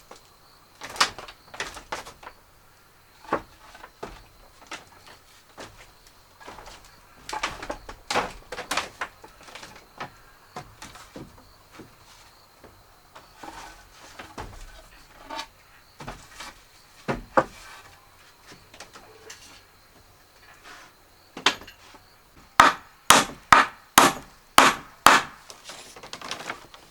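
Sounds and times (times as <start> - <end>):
wooden knocks and clatters: 0.0 - 2.5, 3.1 - 20.5, 21.4 - 26.9.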